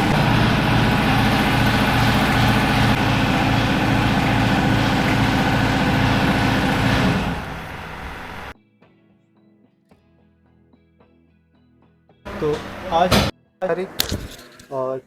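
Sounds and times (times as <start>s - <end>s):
motorcycle engine idling: 0.0s - 8.6s.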